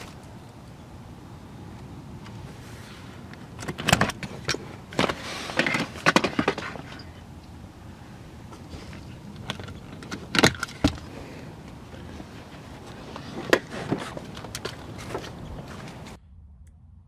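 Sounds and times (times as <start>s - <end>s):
car seat hardware clicking and rattling: 3.4s - 7.2s, 8.5s - 12.1s.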